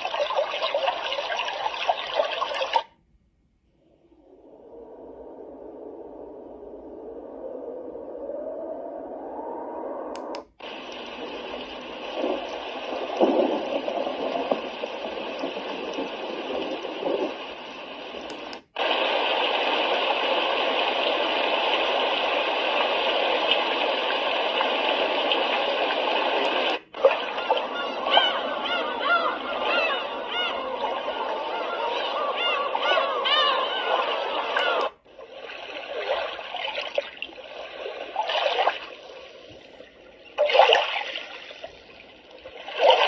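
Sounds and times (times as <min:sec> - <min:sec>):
white noise machine hiss: 0:00.0 - 0:43.0
recorded bird calls: 0:27.1 - 0:34.9.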